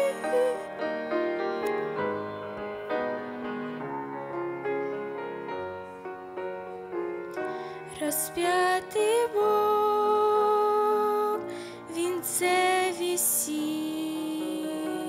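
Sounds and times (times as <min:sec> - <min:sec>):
person singing: 0:00.0 - 0:00.9, 0:07.7 - 0:15.0
slow piano hymn interlude: 0:00.0 - 0:15.0.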